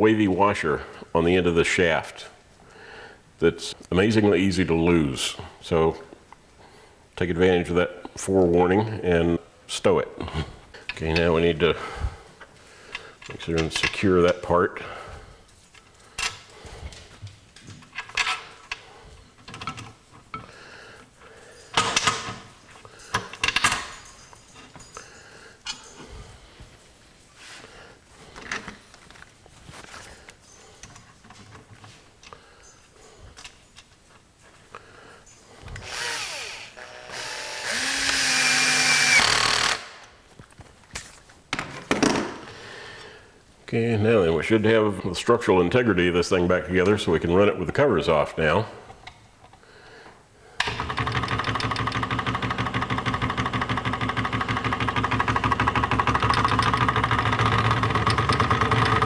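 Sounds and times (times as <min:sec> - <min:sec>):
metal tools clinking and knocking: 0:21.5 - 0:26.2, 0:30.4 - 0:34.2
electric drill driving screws: 0:35.8 - 0:40.0, 0:50.6 - 0:59.0.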